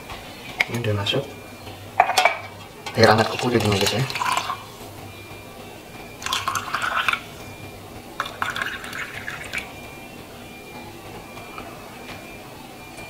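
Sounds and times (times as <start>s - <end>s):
water sloshing in a glass: 2.0s - 4.8s, 6.2s - 7.6s, 8.2s - 9.8s.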